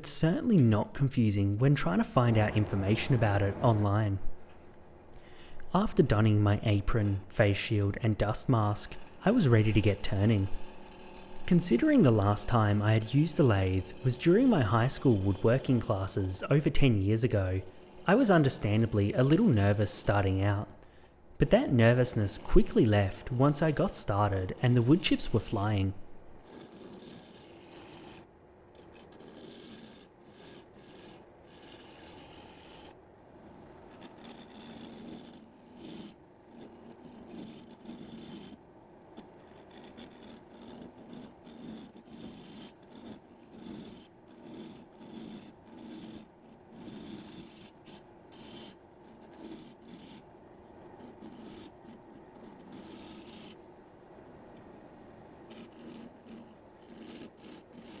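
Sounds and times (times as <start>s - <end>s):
turning tool scraping wood: 0.0s - 33.0s, 33.9s - 38.6s, 39.2s - 53.6s, 55.5s - 58.0s
wood lathe hum: 1.7s - 28.2s.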